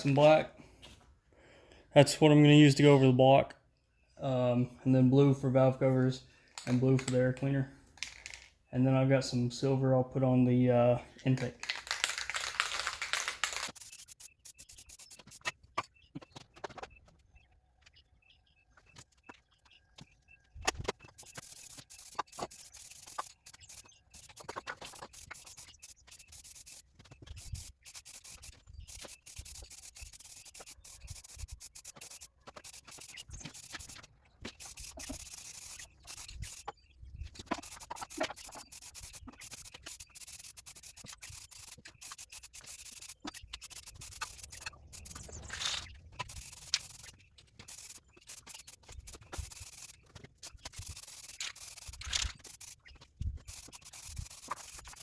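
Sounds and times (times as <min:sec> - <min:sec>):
aerosol spray can hissing: 0:27.4 - 0:34.0, 0:34.6 - 0:36.6, 0:37.6 - 0:50.0, 0:50.7 - 0:52.8, 0:53.4 - 0:55.0.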